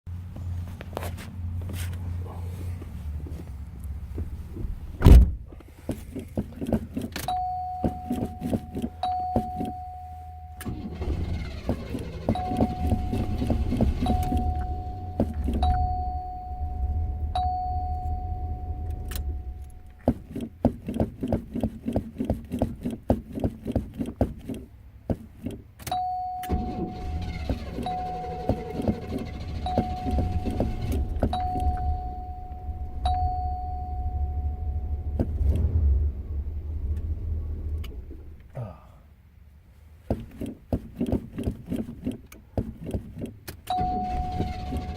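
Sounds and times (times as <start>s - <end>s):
loud thump: 4.6s - 5.5s
car engine cranking on starter: 6.0s - 24.7s, 25.9s - 38.5s, 40.2s - 44.9s
warning chime: 7.3s - 19.9s, 26.0s - 35.2s, 43.7s - 44.9s.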